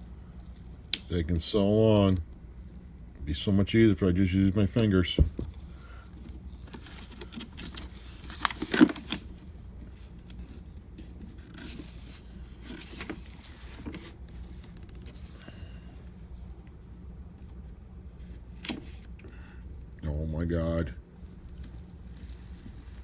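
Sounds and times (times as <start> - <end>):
packaging scraping and rustling: 5.3 - 15.5, 21.2 - 23.0.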